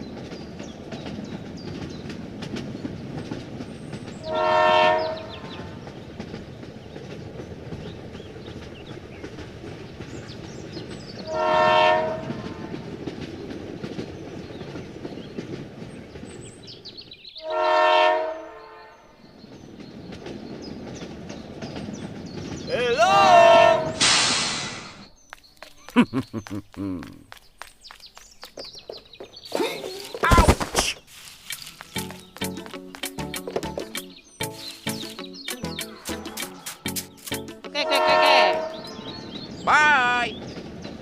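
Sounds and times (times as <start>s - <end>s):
horn blasts: 4.2s - 5.6s, 11.2s - 12.8s, 17.4s - 19.0s, 23.2s - 24.2s, 37.8s - 39.0s.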